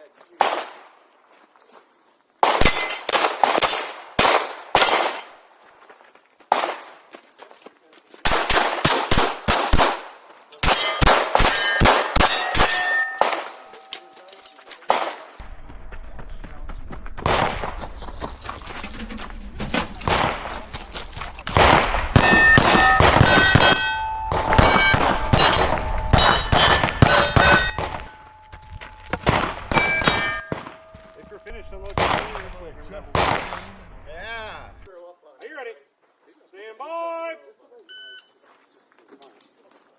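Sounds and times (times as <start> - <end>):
rapid pistol shots: 2.4 - 5.3, 6.5 - 6.9, 8.3 - 13.6, 14.9 - 15.4, 17.2 - 17.9, 20.0 - 20.8, 21.5 - 28.2, 29.2 - 31.0, 32.0 - 34.0
steel target plates ringing: 2.6 - 5.5, 10.6 - 14.7, 19.9 - 32.5.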